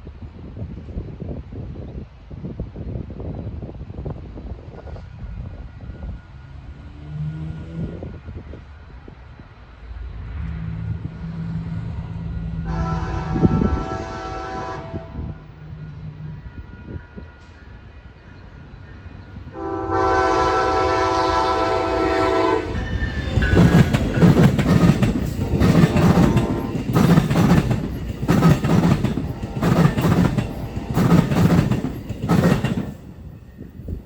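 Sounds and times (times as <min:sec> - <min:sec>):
train horn: 0:10.4 - 0:15.5, 0:19.5 - 0:23.9, 0:25.5 - 0:27.2
train wheels clattering over rail joints: 0:22.9 - 0:33.9.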